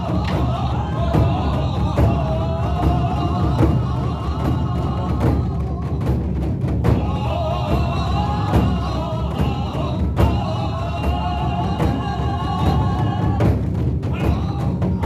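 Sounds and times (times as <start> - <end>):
drums booming: 0.0 - 15.0.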